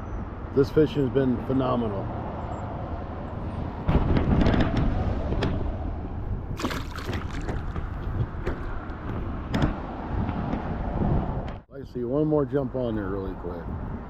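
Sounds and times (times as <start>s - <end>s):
wind buffeting microphone: 2.8s - 14.0s
river water: 6.6s - 8.0s.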